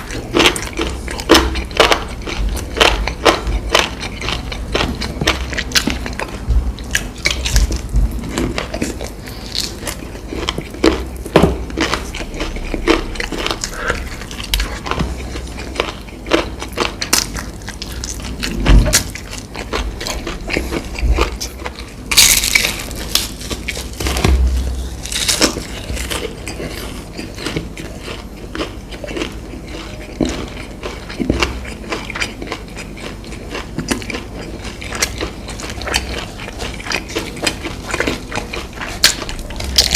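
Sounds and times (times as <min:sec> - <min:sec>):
chewing: 0:00.0 - 0:39.9
crunchy bites into fried food: 0:00.3 - 0:26.8.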